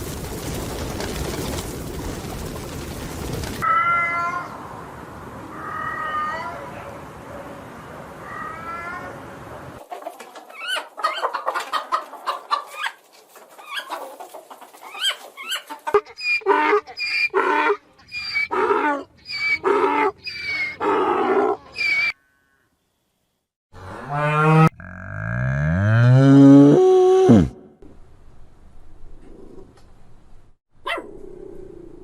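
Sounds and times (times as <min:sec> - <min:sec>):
chickens clucking and squawking: 0:09.8 - 0:20.6
cow mooing: 0:23.8 - 0:27.6.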